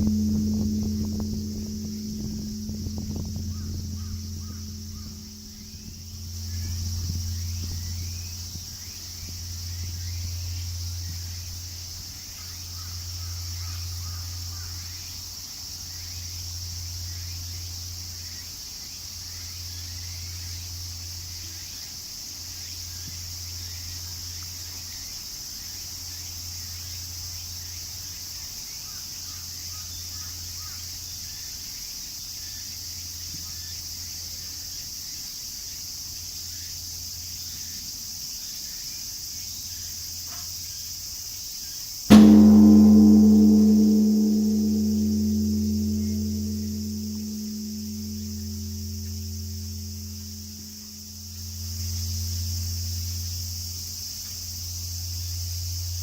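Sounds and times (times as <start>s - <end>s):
large bell ringing: 0.0s - 15.1s, 42.1s - 53.8s
low hum: 0.0s - 18.5s, 42.1s - 56.0s
faint high hiss: 42.1s - 56.0s.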